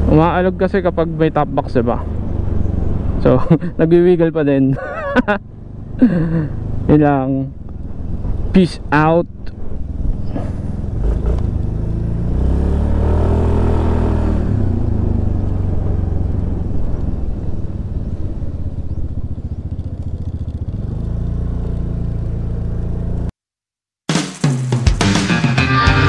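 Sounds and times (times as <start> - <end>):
road and wind noise: 0.0 - 23.3
scooter engine running: 14.7 - 23.3.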